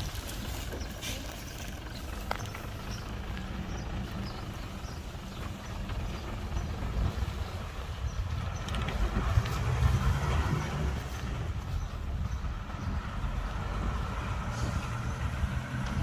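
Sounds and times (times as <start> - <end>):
diesel engine rumbling: 0.0 - 16.0.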